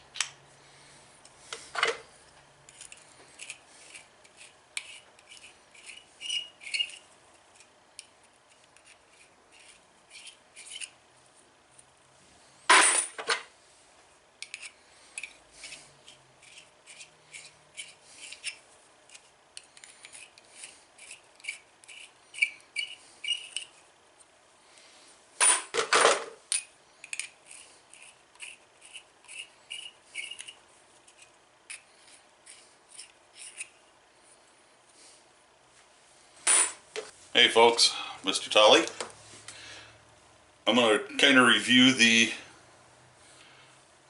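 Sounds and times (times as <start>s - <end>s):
tool scraping brass cases: 2.6s - 7.7s, 14.4s - 23.8s, 27.0s - 33.8s.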